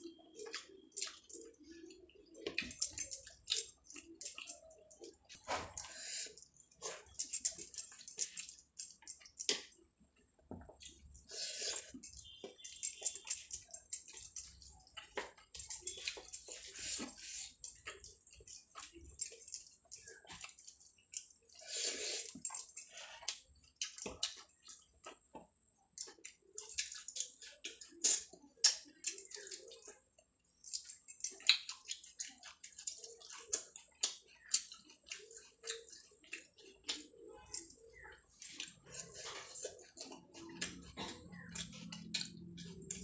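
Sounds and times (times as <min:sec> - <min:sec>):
wet chewing and smacking: 0:00.0 - 0:43.0.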